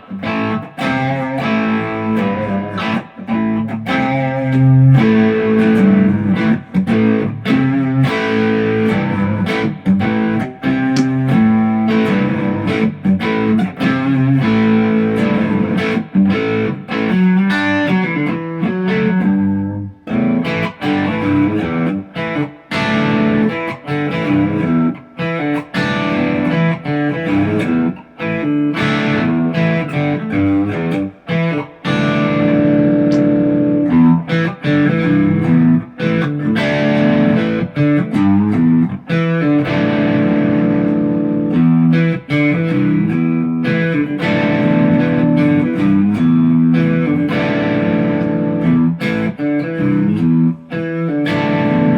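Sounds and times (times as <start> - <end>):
electric guitar riffs through amp: 0.0 - 51.9.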